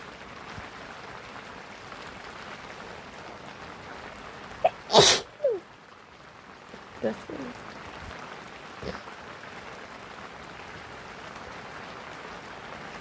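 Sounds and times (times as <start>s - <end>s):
rain hissing: 0.0s - 13.0s
person sneezing: 4.7s - 5.6s.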